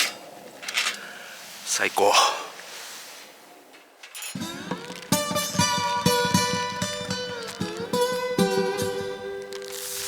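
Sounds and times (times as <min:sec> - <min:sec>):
plucked acoustic string music: 0:04.4 - 0:09.8.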